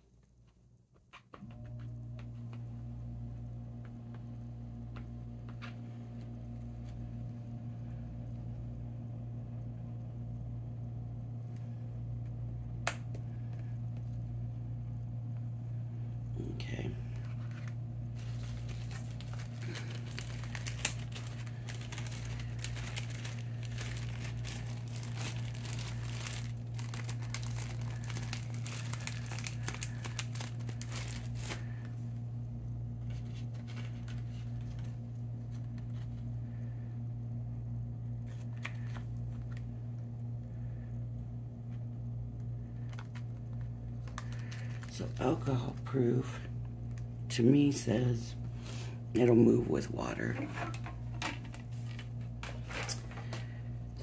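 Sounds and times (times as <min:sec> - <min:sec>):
steady low hum: 0:00.0 - 0:54.0
craft materials crinkling: 0:17.2 - 0:31.9, 0:42.8 - 0:45.9, 0:50.2 - 0:53.6.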